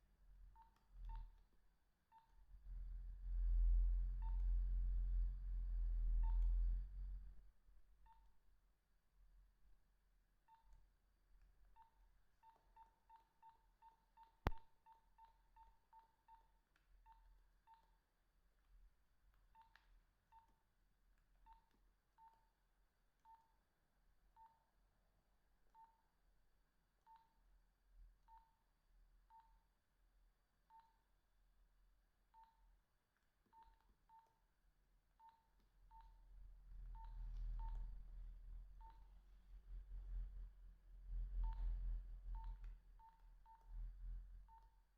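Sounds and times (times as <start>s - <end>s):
low rumble: 2.6s - 7.5s
mobile phone keypad beeps: 33.5s - 34.4s, 36.9s - 37.8s, 42.3s - 43.6s, 44.5s - 44.8s.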